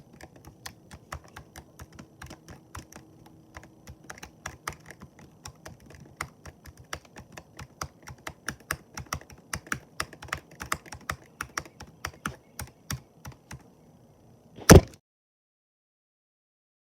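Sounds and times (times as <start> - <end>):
computer keyboard typing: 0.0 - 13.7
loud thump: 14.6 - 15.0.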